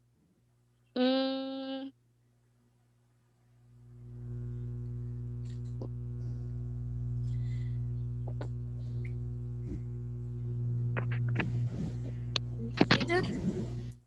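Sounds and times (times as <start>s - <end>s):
electrical mains hum: 0.0s - 14.0s.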